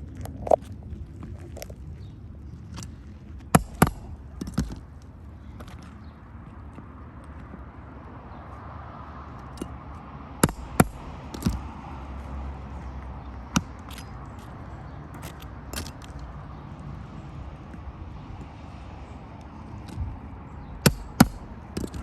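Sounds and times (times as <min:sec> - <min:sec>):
low outdoor rumble: 0:00.0 - 0:22.0
sharp clicks and knocks: 0:02.7 - 0:05.9, 0:09.4 - 0:11.9, 0:12.8 - 0:16.6, 0:19.3 - 0:22.0
metal tool prying nails: 0:03.6 - 0:04.8, 0:10.4 - 0:11.8, 0:13.5 - 0:16.3, 0:20.8 - 0:22.0.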